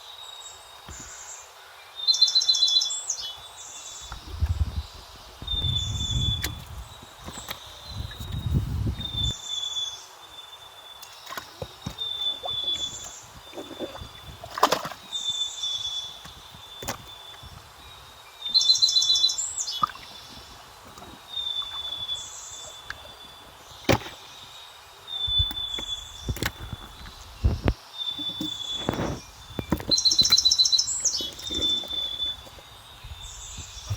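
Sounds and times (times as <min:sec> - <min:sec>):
bird calling: 0:11.0 - 0:33.9.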